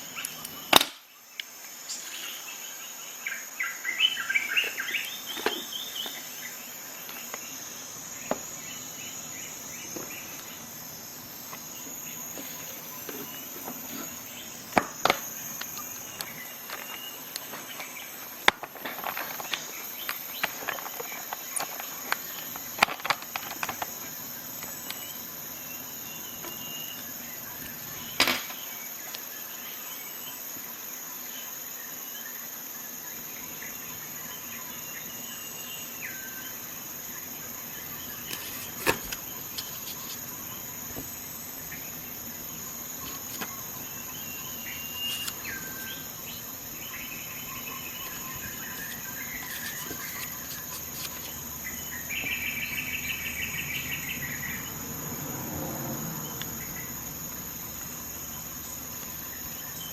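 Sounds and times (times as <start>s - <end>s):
insects chirring: 0.0s - 59.9s.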